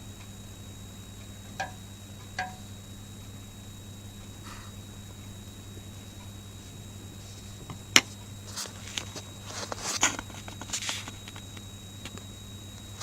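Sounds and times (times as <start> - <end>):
low electrical hum: 0.0 - 13.0
sharp clicks and taps: 2.4 - 2.6.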